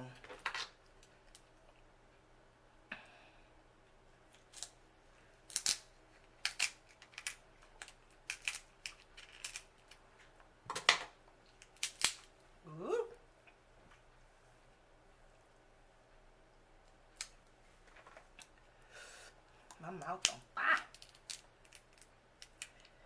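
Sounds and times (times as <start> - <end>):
shells cracking by hand: 5.5 - 10.0, 11.6 - 12.3, 20.2 - 23.0.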